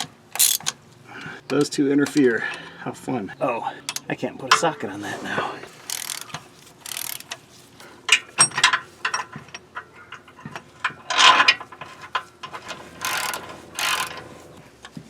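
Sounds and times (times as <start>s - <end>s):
metal tools clinking: 0.0s - 0.7s, 3.9s - 7.4s, 8.1s - 10.3s, 11.1s - 14.3s
ratchet wrench clicking: 0.0s - 0.7s, 5.8s - 7.4s, 13.0s - 14.2s.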